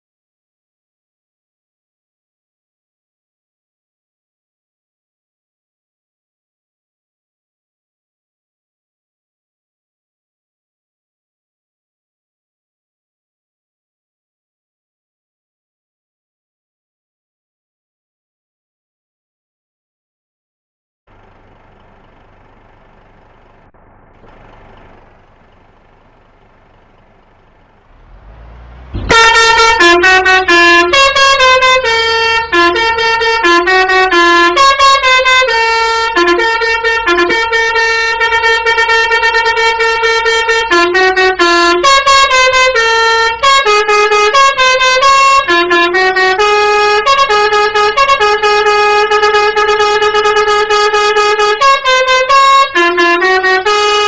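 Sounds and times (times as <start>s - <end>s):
faint low hum: 21.1s - 33.8s
musical bus air horn: 21.1s - 54.0s.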